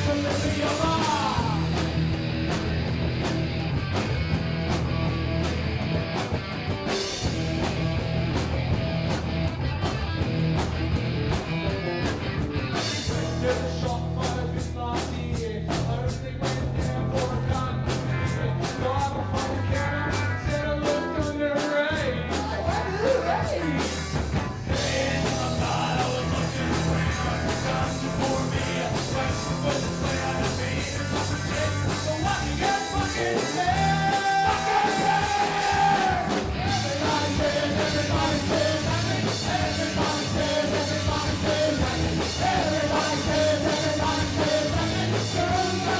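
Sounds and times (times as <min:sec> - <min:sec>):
person singing: 0:00.0 - 0:01.8, 0:12.8 - 0:24.1, 0:24.7 - 0:45.9
live rock band playing: 0:00.0 - 0:45.9.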